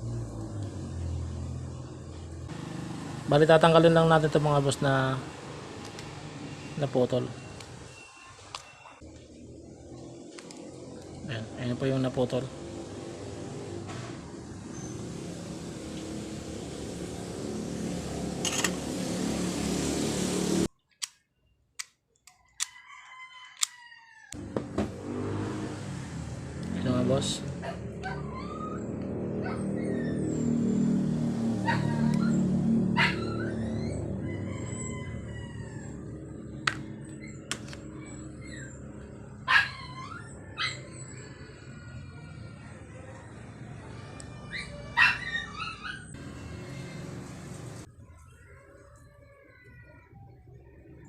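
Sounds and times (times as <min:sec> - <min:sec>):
distant rooster crowing: 0:22.5 - 0:24.8, 0:31.6 - 0:39.4, 0:40.3 - 0:47.9
dog barking: 0:31.6 - 0:32.3, 0:32.9 - 0:33.6, 0:39.4 - 0:40.9, 0:44.6 - 0:46.1.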